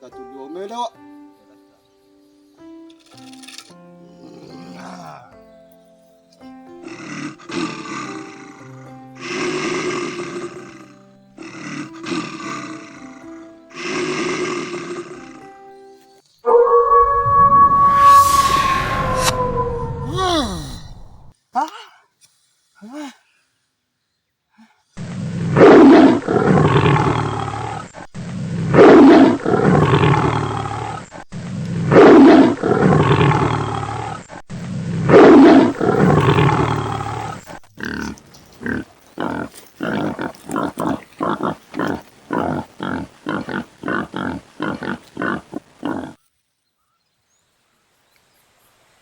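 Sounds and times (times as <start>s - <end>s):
lion grunting: 4.2s - 5.4s, 6.8s - 15.5s, 25.0s - 46.2s
lion roaring: 6.8s - 15.4s, 16.5s - 21.3s, 25.0s - 46.2s.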